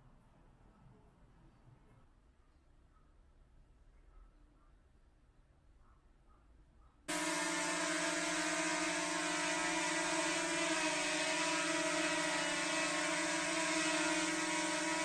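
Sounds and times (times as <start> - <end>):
drone propellers whirring: 7.1 - 15.0.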